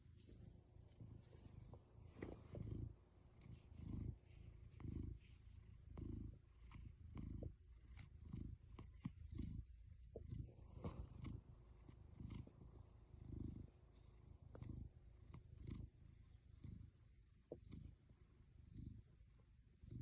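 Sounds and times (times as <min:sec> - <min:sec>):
cat purring: 0:00.0 - 0:20.0.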